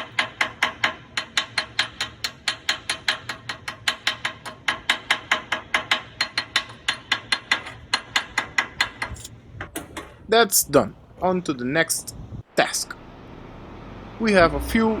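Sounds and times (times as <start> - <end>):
rapid metallic tapping: 0.0 - 10.3.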